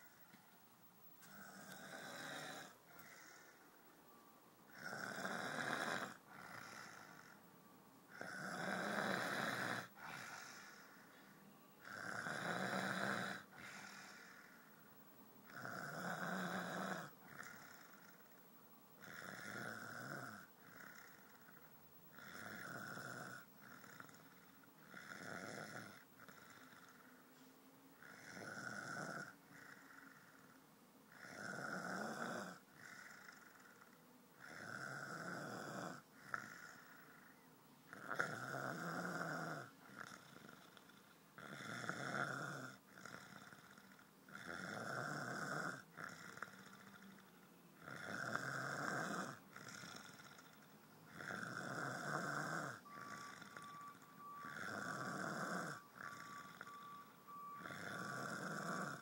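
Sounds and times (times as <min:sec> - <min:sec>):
man snoring: 0:01.2 - 0:03.6, 0:04.7 - 0:07.4, 0:08.1 - 0:11.1, 0:11.8 - 0:14.7, 0:15.4 - 0:18.4, 0:19.0 - 0:27.2, 0:28.0 - 0:59.0.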